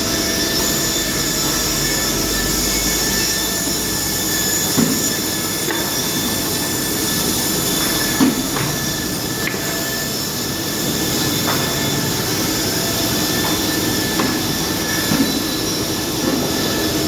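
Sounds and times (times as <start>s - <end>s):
woodworking machine whining: 0.0s - 17.0s.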